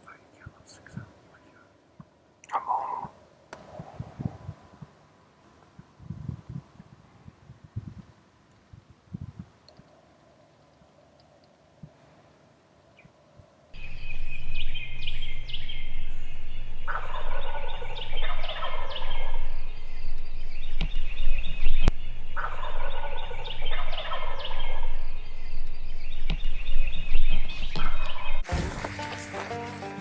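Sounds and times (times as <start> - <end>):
low steady hum: 13.8 - 28.5
wild turkeys gobbling: 13.8 - 28.5.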